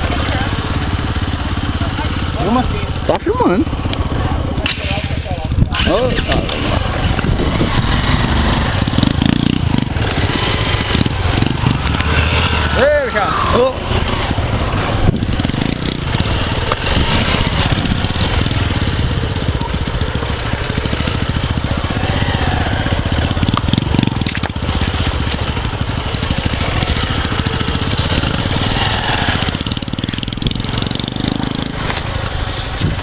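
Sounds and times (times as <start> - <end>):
motorcycle engine running: 0.0 - 33.0.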